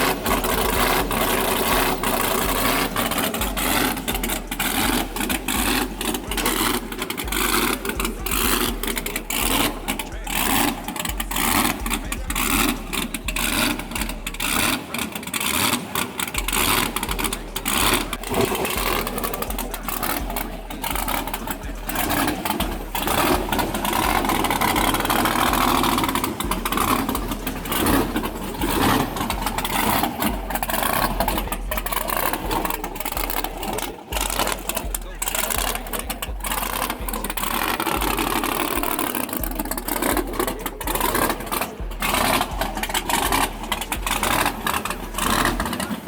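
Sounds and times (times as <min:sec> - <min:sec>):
race car engine chattering: 0:00.0 - 0:46.0.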